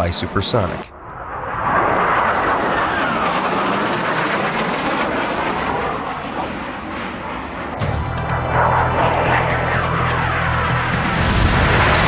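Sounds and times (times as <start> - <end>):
jet aircraft flying past: 0.0 - 12.0.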